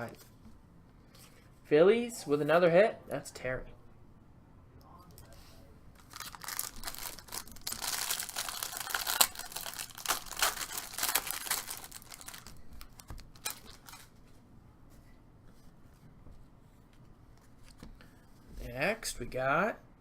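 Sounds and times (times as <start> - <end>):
wrapper crinkling and tearing: 6.0 - 14.1.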